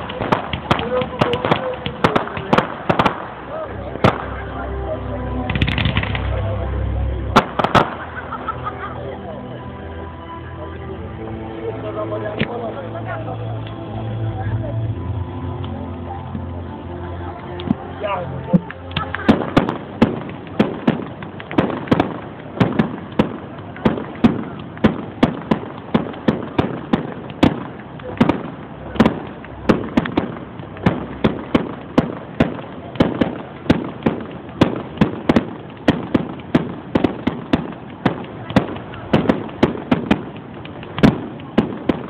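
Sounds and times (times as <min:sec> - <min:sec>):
fireworks bursting: 0:00.0 - 0:04.6, 0:05.3 - 0:09.0, 0:17.3 - 0:42.0.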